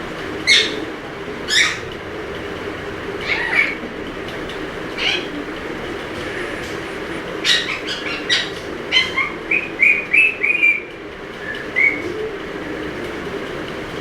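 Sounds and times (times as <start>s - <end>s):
parrot squawking and chirping: 1.5s - 1.9s, 3.2s - 3.8s, 5.0s - 5.3s, 6.2s - 10.9s.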